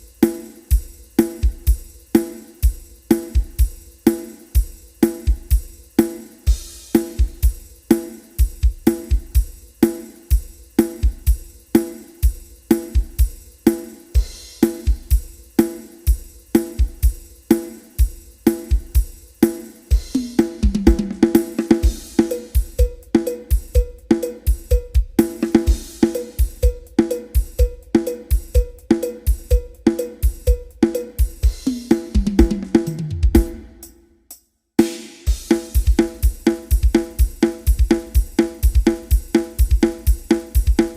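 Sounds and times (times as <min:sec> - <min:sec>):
drum kit rock groove: 0:00.0 - 0:40.9
tom fill: 0:17.5 - 0:34.0.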